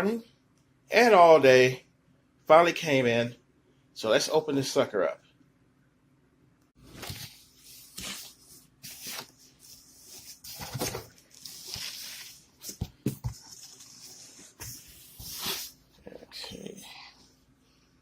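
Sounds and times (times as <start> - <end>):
cardboard scraping and rustling: 6.8 - 15.8.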